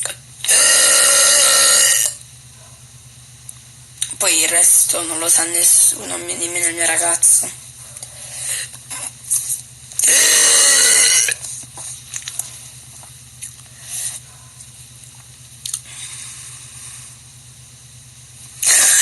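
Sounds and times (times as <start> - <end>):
woman burping loudly: 0.0 - 2.2, 10.0 - 11.4, 18.6 - 19.0.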